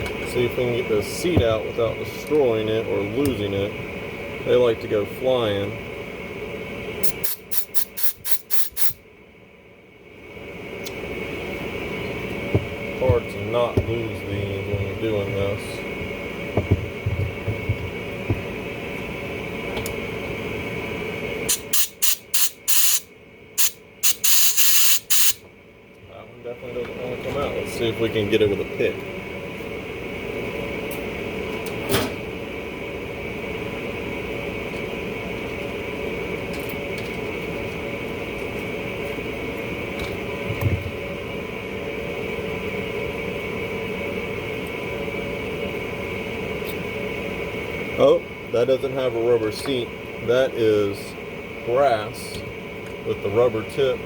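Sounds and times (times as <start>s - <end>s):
steady hum with faint whine: 0.0s - 54.0s
compressed air blow gun blasts: 7.0s - 9.0s, 21.5s - 23.0s, 23.6s - 25.4s.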